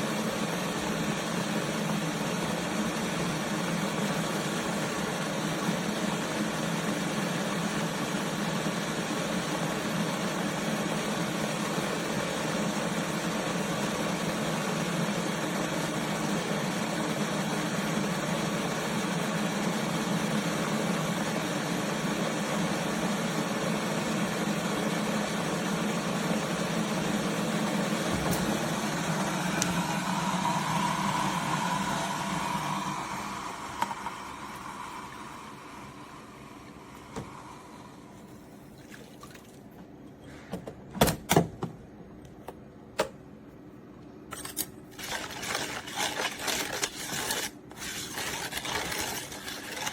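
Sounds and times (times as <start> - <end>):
kettle heating water: 0.0 - 39.6.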